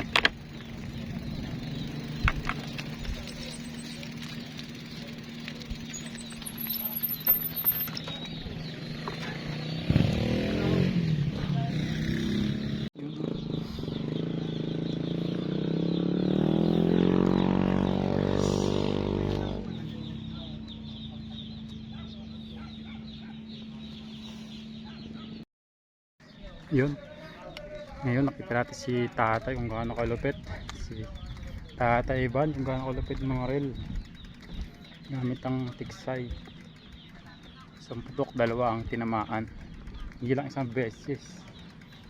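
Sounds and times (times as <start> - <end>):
engine rising in pitch: 0.0 - 21.9
motor running steadily: 0.0 - 24.7, 27.7 - 42.0
bird chirping: 0.0 - 25.4, 26.2 - 42.0.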